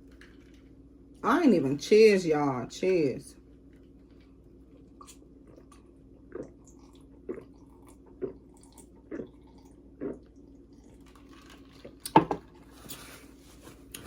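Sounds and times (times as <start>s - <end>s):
person gulping fizzy drink: 4.7s - 12.4s.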